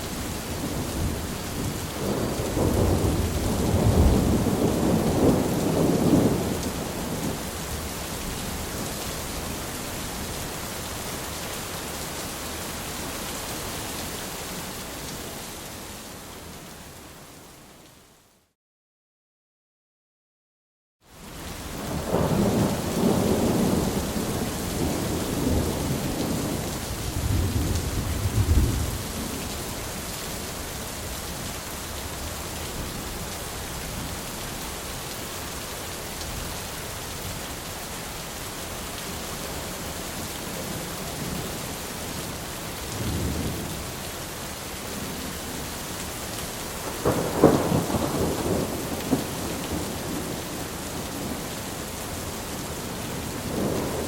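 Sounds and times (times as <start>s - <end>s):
steady rain: 0.0s - 18.6s, 21.0s - 54.0s
rolling thunder: 0.6s - 7.4s, 21.8s - 29.4s, 42.9s - 43.6s, 46.8s - 51.5s, 53.2s - 54.0s
thunderclap: 46.8s - 50.3s.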